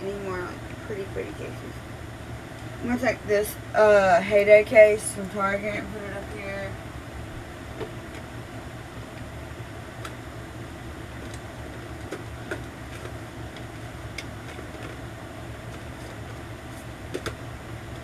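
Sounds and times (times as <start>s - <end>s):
steady low hum: 0.0s - 18.0s
plastic cases clicking and tapping: 17.1s - 17.4s.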